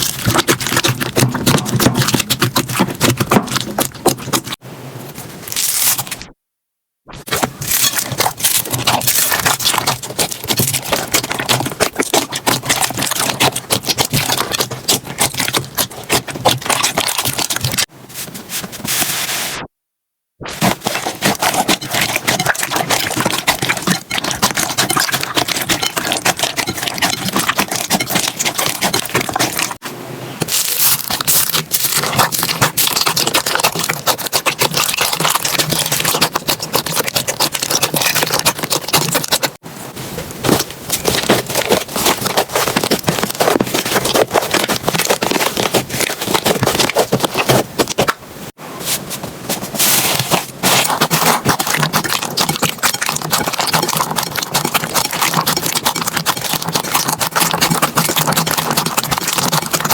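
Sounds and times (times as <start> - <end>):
slime crackling and popping: 30.4 - 39.5.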